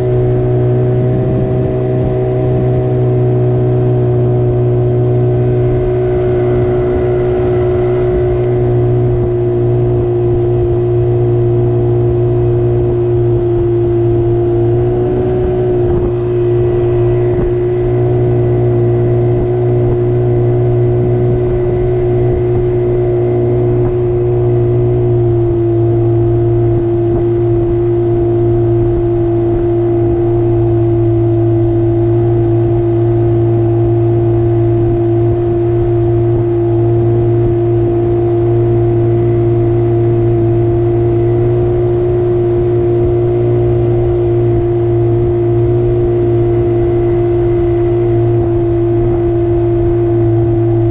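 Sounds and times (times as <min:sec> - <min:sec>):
outboard motor running: 0:00.0 - 0:50.9.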